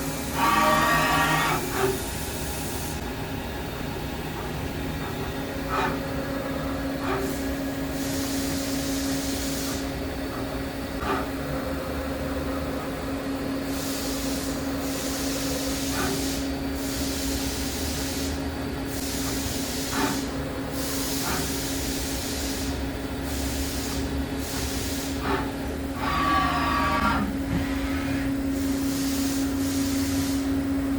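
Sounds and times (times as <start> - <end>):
machining center humming: 0.0 - 15.8, 24.0 - 30.9.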